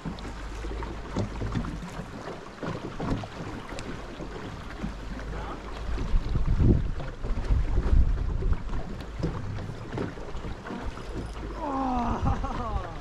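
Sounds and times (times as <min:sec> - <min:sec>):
river water flowing: 0:00.0 - 0:13.0
wind buffeting microphone: 0:05.7 - 0:13.0.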